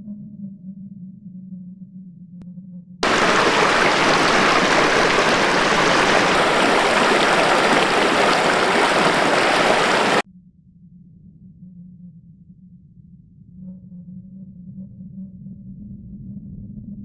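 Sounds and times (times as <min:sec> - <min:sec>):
river water rushing: 0:03.0 - 0:10.2.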